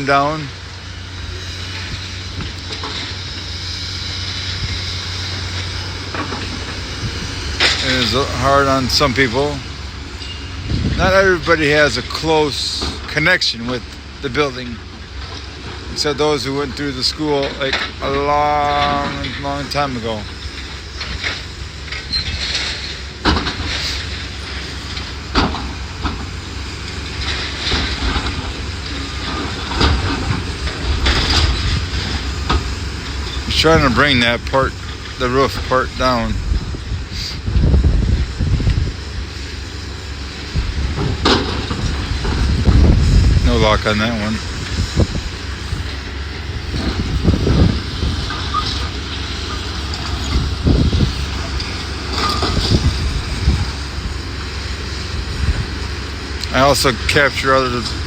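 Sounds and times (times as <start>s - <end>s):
demolition machinery rumbling: 0.0s - 58.0s
debris knocking and clanking: 45.8s - 53.7s.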